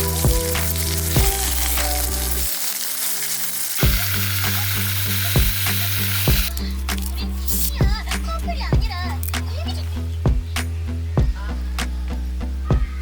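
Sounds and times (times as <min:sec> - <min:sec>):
background music with beat: 0:00.0 - 0:02.6, 0:03.8 - 0:13.0
food sizzling in a pan: 0:00.0 - 0:07.8.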